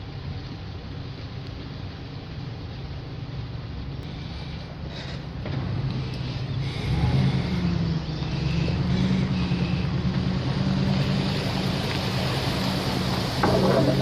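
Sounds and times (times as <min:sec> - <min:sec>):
small boat motor running: 0:04.1 - 0:14.0.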